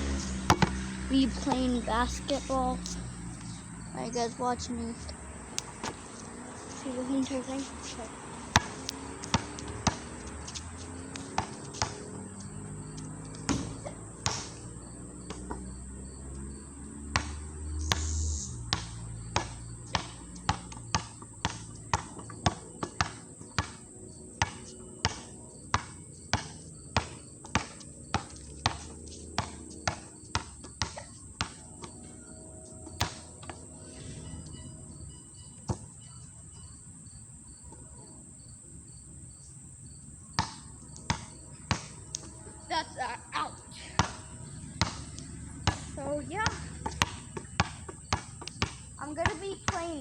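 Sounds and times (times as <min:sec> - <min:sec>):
basketball bouncing: 0:00.0 - 0:02.6, 0:06.9 - 0:32.2, 0:32.9 - 0:33.6, 0:40.3 - 0:42.8, 0:43.9 - 0:50.0.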